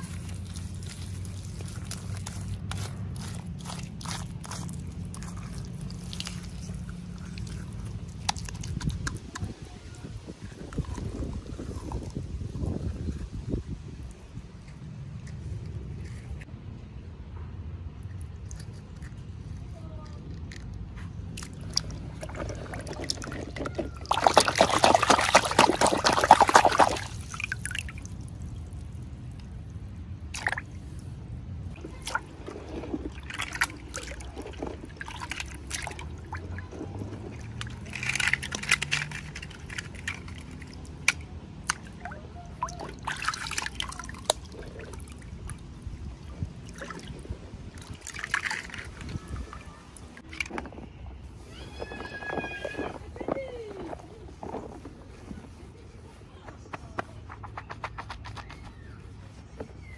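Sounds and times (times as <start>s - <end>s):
liquid trickling: 0.0s - 16.4s, 21.3s - 50.9s
soft rustles: 48.6s - 59.9s.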